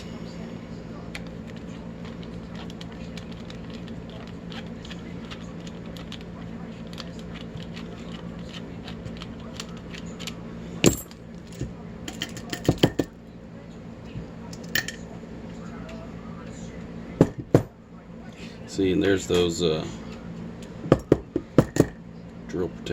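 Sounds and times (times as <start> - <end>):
small metal parts clinking: 10.2 - 13.1, 14.5 - 15.0.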